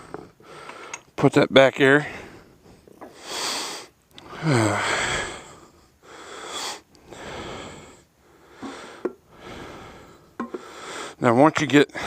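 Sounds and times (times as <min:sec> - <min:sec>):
man breathing hard: 0:00.0 - 0:01.2, 0:02.0 - 0:11.2
man sighing: 0:04.2 - 0:05.5.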